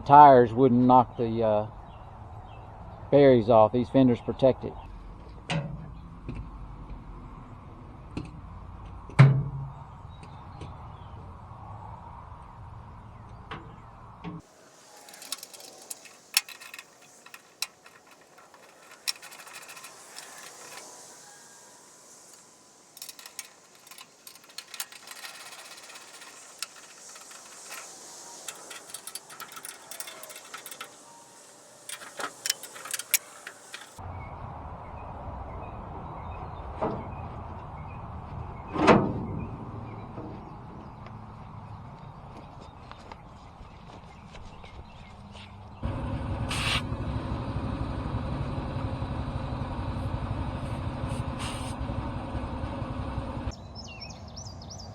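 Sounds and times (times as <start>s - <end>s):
hand tools clicking on metal: 15.0s - 20.9s, 22.3s - 34.0s.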